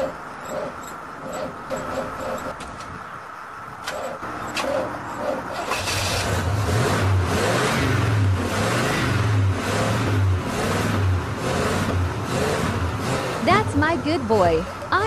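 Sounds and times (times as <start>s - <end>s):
old car engine revving: 4.3s - 14.7s.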